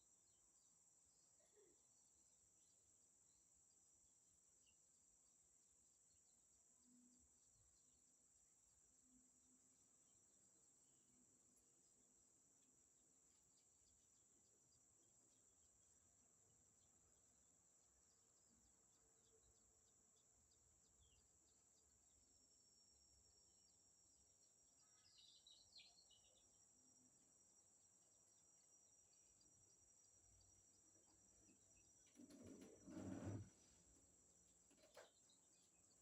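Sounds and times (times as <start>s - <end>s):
bird chirps: 24.7s - 26.7s.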